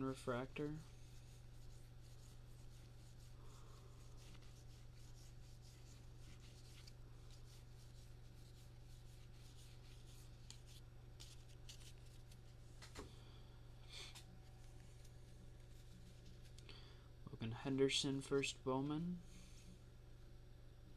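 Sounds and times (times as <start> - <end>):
low steady hum: 0.0 - 20.9
cards rustling and flicking: 9.1 - 13.2.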